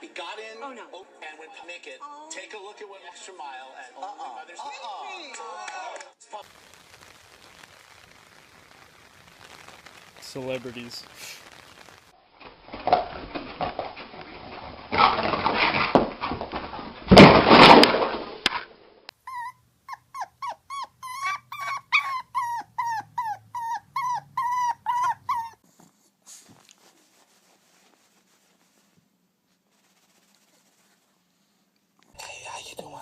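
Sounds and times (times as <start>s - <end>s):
dog whimpering yips: 19.2s - 25.6s.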